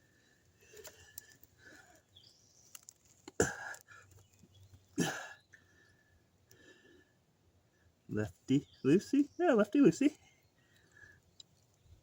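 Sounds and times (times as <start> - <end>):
man coughing or grunting: 3.4 - 3.8, 5.0 - 5.4.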